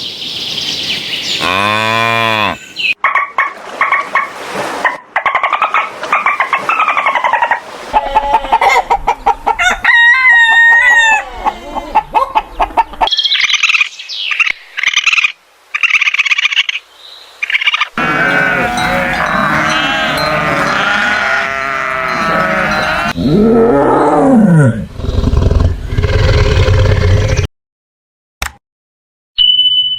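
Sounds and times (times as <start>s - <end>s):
chickens calling: 1.0s - 16.8s, 17.4s - 23.2s
animal calls: 17.4s - 23.4s.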